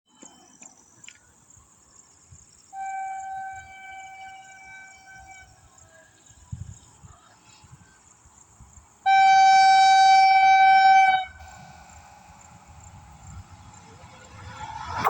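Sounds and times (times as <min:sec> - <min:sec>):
train horn blast: 0:02.8 - 0:05.6, 0:09.1 - 0:13.6.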